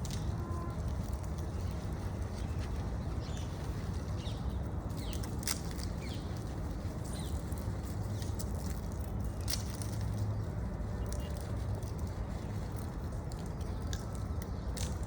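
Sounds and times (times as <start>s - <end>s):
low outdoor rumble: 0.0s - 15.0s.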